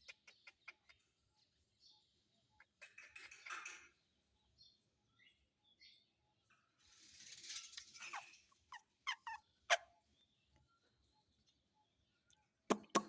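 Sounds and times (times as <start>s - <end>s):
parrot calls and clicks: 0.0s - 1.0s
parrot squawking: 7.9s - 9.9s.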